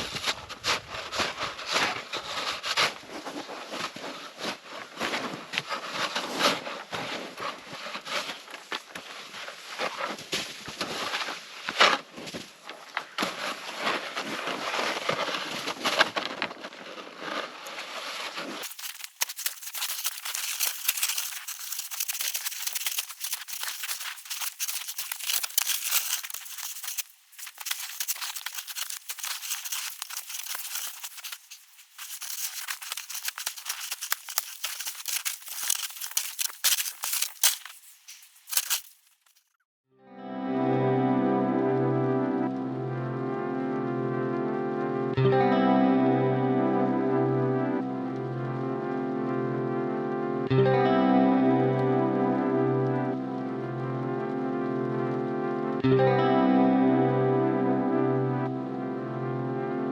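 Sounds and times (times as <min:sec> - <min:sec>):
snow crunching and scraping: 0:00.0 - 0:12.4, 0:13.3 - 0:39.4.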